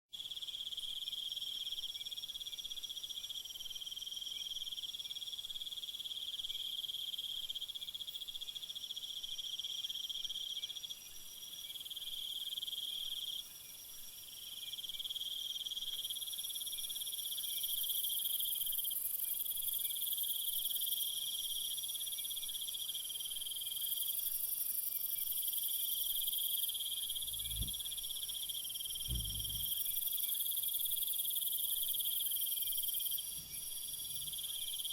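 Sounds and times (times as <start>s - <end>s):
crickets trilling: 15.1s - 34.9s
brief low sounds: 29.0s - 29.7s.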